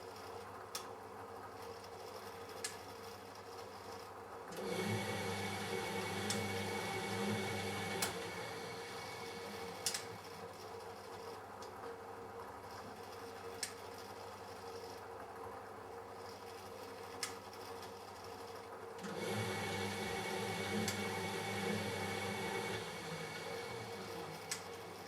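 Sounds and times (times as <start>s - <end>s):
washing machine motor humming: 4.5s - 10.8s, 19.0s - 25.0s.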